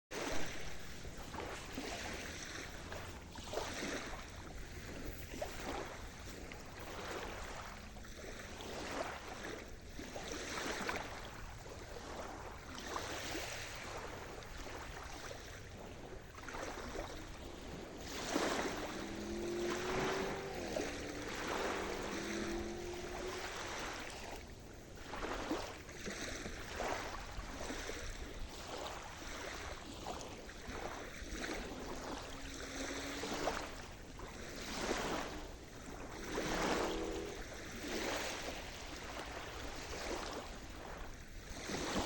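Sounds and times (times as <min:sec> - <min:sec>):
sea surf washing in: 0:00.2 - 0:42.0
low droning tone: 0:15.6 - 0:25.5, 0:30.6 - 0:39.6.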